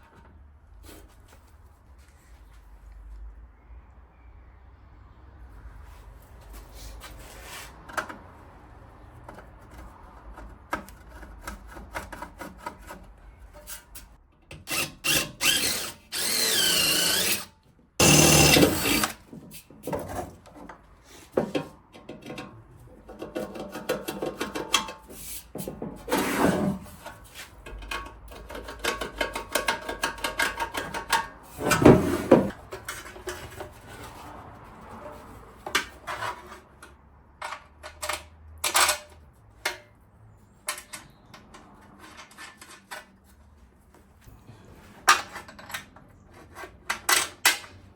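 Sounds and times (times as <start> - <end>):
power drill drilling into metal: 14.7 - 19.2.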